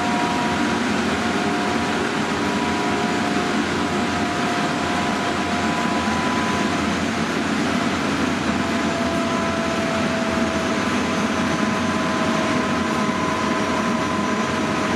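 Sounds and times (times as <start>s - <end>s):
loud machinery noise: 0.0s - 14.9s
machinery whining tones: 0.0s - 14.9s.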